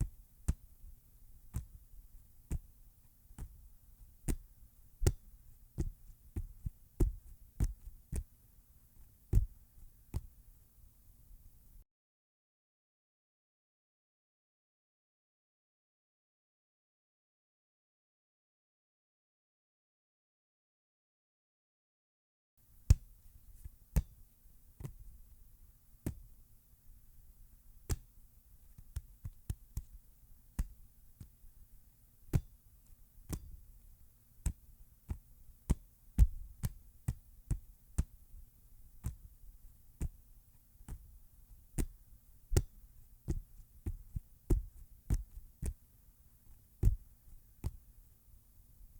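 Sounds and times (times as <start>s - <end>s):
hand slapping a football: 0.0s - 0.8s, 1.4s - 1.8s, 2.5s - 2.7s, 3.3s - 3.7s, 4.3s - 8.3s, 9.3s - 10.4s, 22.8s - 24.2s, 24.8s - 25.3s, 26.0s - 26.3s, 27.8s - 31.4s, 32.3s - 33.6s, 34.4s - 38.4s, 39.0s - 39.3s, 40.0s - 40.2s, 40.8s - 41.2s, 41.8s - 45.8s, 46.5s - 47.9s
faint low hum: 0.0s - 11.8s, 22.6s - 48.9s.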